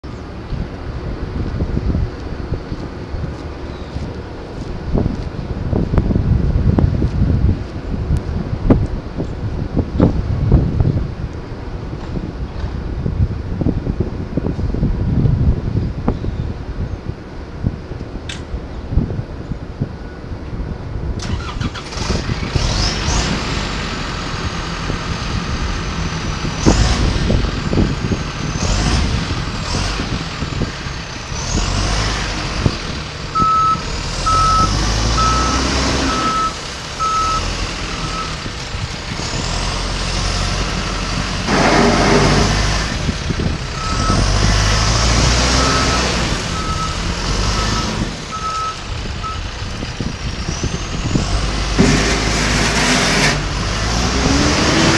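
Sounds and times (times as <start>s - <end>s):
backhoe diesel engine rumbling: 20.6s - 54.9s
loud rush of noise: 21.2s - 54.9s
reversing alarm beeping: 33.4s - 38.4s, 43.8s - 44.3s, 45.6s - 49.5s.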